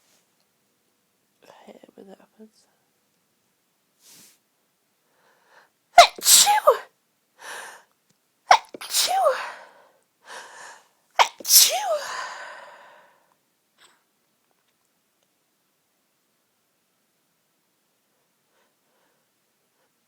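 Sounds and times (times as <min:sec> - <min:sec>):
breath drawn in: 0:04.0 - 0:04.4
woman sneezing: 0:06.0 - 0:06.9, 0:08.5 - 0:09.7, 0:11.2 - 0:12.4.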